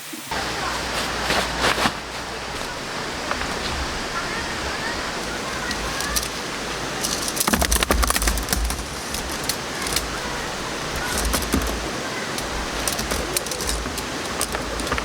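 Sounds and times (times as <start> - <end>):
stream rushing: 0.0 - 15.0
sharp clicks and rattles: 4.8 - 15.0.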